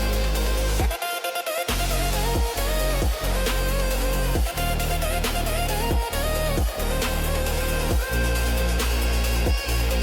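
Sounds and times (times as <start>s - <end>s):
electronic music with heavy bass: 0.0s - 10.0s.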